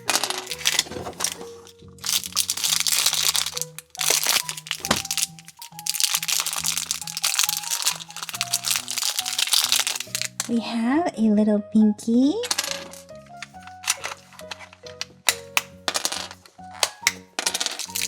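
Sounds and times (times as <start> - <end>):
plastic wrapper crinkling: 0.0 - 10.5, 12.4 - 15.6, 16.2 - 18.0
background music: 0.0 - 18.0.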